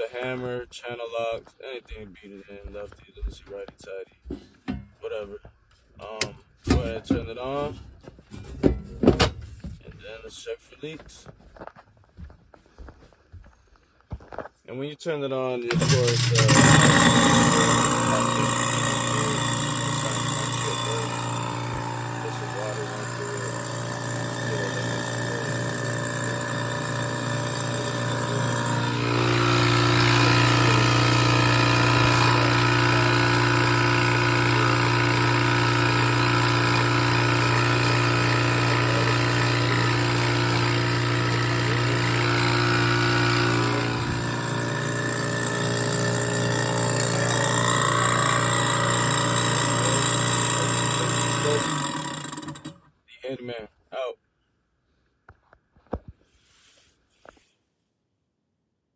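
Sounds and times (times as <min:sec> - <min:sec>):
garbage disposal motor hum: 0:06.0 - 0:09.9, 0:15.6 - 0:52.8.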